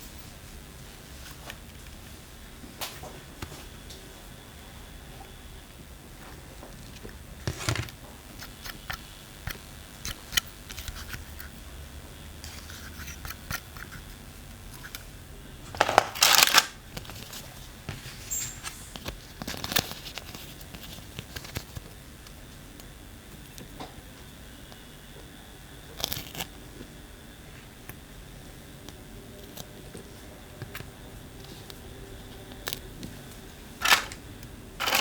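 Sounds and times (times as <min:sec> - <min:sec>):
packaging rustling: 0:07.4 - 0:08.0, 0:15.6 - 0:17.4, 0:33.8 - 0:34.2, 0:34.8 - 0:35.0.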